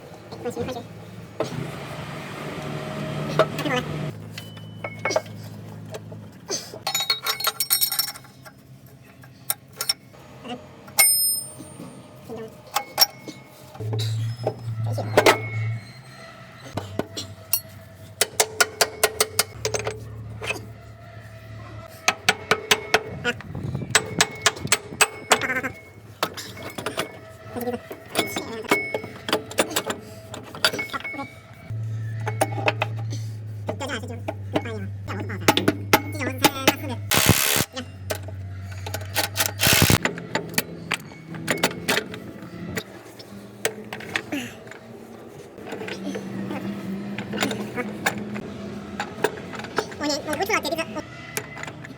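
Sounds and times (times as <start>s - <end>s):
metal parts clinking: 6.8s - 10.1s, 36.5s - 42.0s
metal tools clinking: 6.8s - 10.1s, 11.0s - 12.0s.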